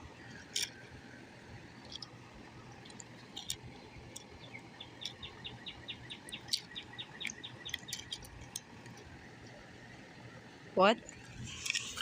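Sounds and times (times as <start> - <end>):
bird trilling: 4.1 - 8.5.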